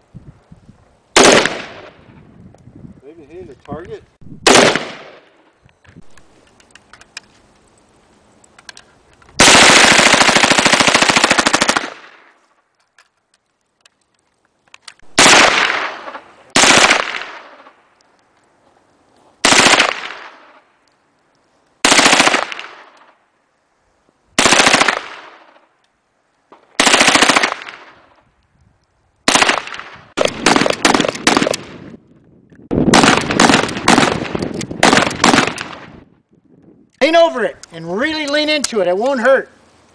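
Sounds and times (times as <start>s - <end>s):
automatic gunfire burst: 1.2s - 1.8s, 4.4s - 5.2s, 9.4s - 12.1s, 15.2s - 15.9s, 16.6s - 17.3s, 19.4s - 20.1s, 21.8s - 22.6s, 24.4s - 25.2s, 26.8s - 27.8s, 29.3s - 31.7s, 32.9s - 35.8s
single gunshots echoing: 1.2s - 2.0s, 4.4s - 5.3s.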